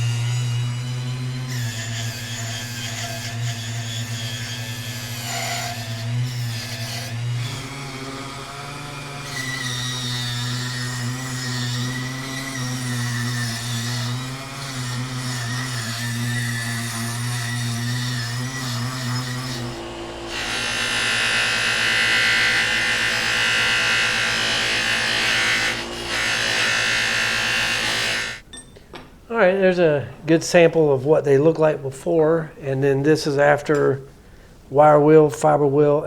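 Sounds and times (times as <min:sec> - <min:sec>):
polishing wheel motor hum: 0:07.2 - 0:28.4.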